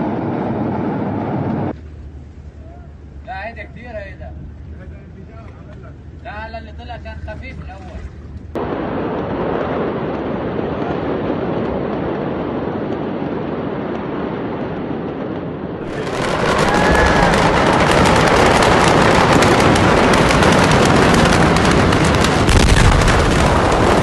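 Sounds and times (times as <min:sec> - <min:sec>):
large fire rumbling: 0:00.0 - 0:07.7, 0:08.3 - 0:24.0
dense rapid crackling pops: 0:08.5 - 0:24.0.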